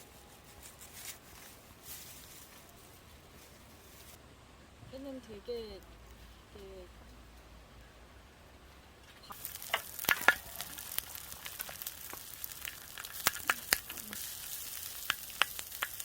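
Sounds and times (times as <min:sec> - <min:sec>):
food sizzling in a pan: 0:09.3 - 0:16.0
oil spattering and popping: 0:09.3 - 0:16.0.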